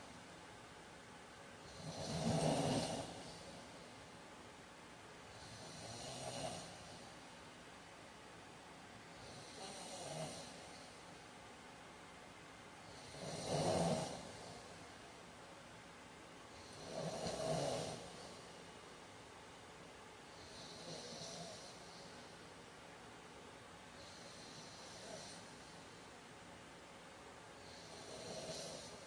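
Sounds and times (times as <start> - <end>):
man snoring: 1.7 - 3.6, 5.3 - 7.0, 9.2 - 10.8, 12.9 - 14.7, 16.6 - 18.4, 20.4 - 22.1, 24.0 - 25.5, 27.6 - 29.0.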